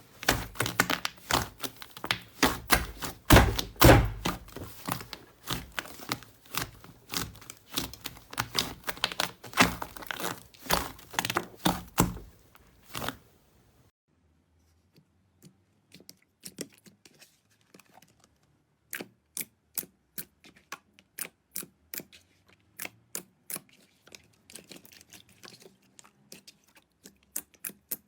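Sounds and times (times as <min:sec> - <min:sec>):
slime squeezed by hand crackling: 0:00.1 - 0:13.2
loud thuds: 0:01.2 - 0:05.1.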